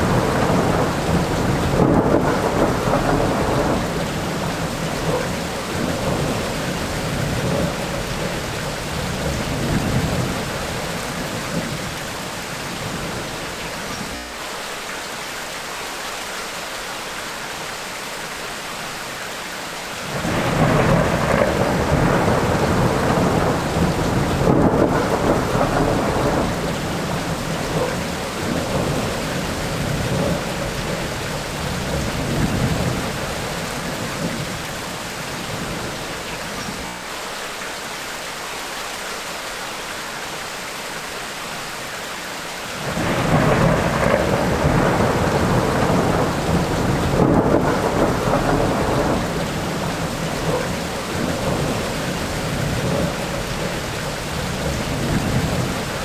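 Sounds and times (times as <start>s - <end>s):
thunder rumbling: 0.0s - 14.2s, 20.0s - 36.9s, 42.8s - 56.0s
steady rain falling: 0.0s - 56.0s.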